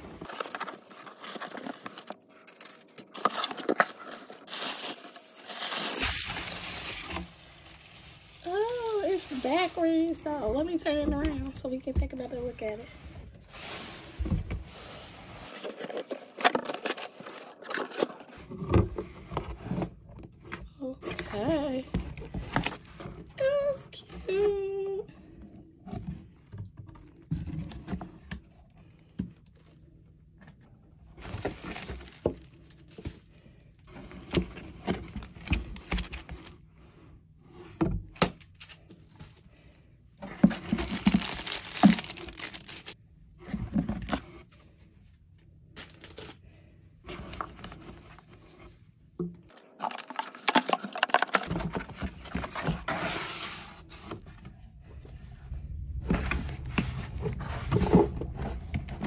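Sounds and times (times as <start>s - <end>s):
packaging rustling and scraping: 0.0s - 23.3s, 31.1s - 36.7s, 38.5s - 44.7s, 45.8s - 46.4s, 49.5s - 59.0s.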